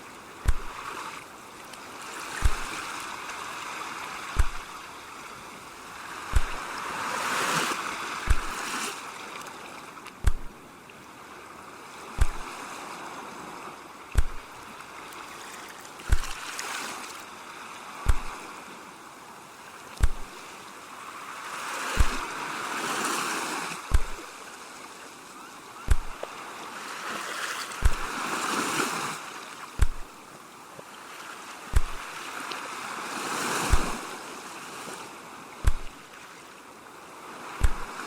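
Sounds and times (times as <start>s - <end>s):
ocean waves washing: 0.0s - 38.0s
low thump: 0.4s - 0.8s, 2.4s - 2.7s, 4.4s - 4.7s, 6.3s - 6.6s, 8.3s - 8.6s, 10.2s - 10.5s, 12.2s - 12.5s, 14.2s - 14.5s, 16.1s - 16.4s, 18.1s - 18.4s, 20.0s - 20.3s, 22.0s - 22.2s, 23.9s - 24.2s, 25.9s - 26.2s, 27.8s - 28.1s, 29.8s - 30.1s, 31.8s - 32.0s, 33.7s - 34.0s, 35.6s - 36.0s, 37.6s - 38.0s.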